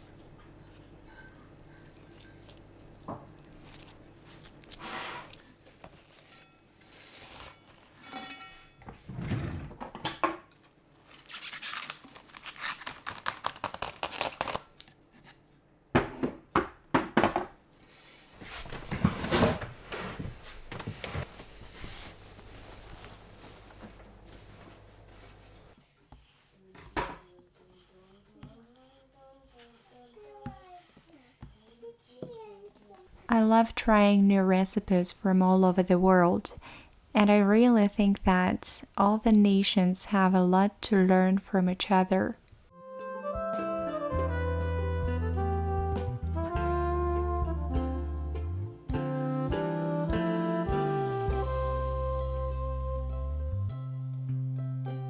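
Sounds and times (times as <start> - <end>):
crinkling rustling: 0.0 - 8.3, 11.0 - 14.7, 18.3 - 25.8
dishes and utensils knocking: 8.0 - 9.0.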